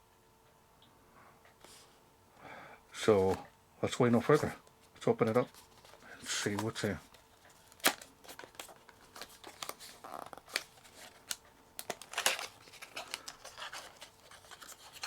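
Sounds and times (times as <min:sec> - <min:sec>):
packaging rustles and scrapes: 0:07.6 - 0:15.0
packaging clicks: 0:07.7 - 0:15.0.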